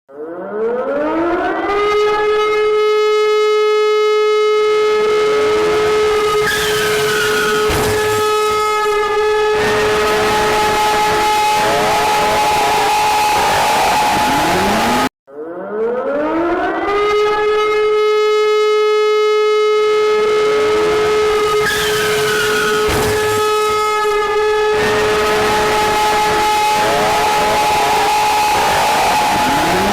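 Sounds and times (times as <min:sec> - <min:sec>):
civil defence siren: 0:00.1 - 0:29.9
falling tone: 0:04.6 - 0:18.7.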